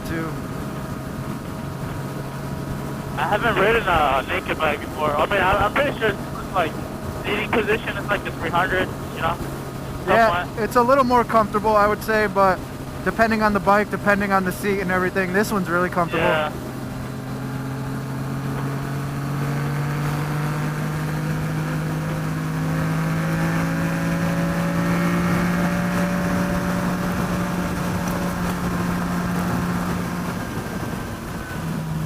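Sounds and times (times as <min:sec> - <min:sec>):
motorcycle engine running: 0:08.9 - 0:32.0.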